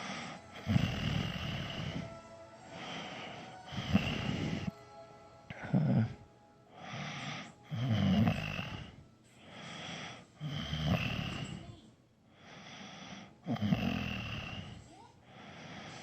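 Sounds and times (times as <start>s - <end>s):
man snoring: 0.0s - 2.2s, 2.8s - 4.7s, 5.5s - 6.2s, 7.6s - 9.0s, 10.4s - 11.6s, 13.4s - 14.8s
quiet breaths: 0.0s - 16.0s.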